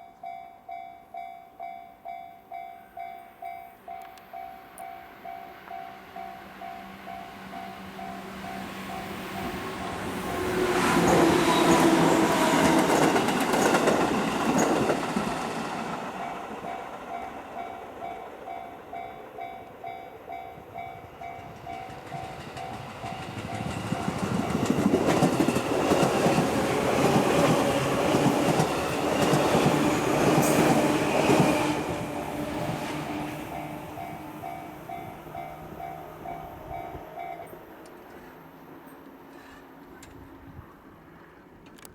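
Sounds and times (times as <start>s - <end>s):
level-crossing warning bell ringing: 0.0s - 10.0s, 33.5s - 37.7s
train passing loudly: 4.3s - 41.5s.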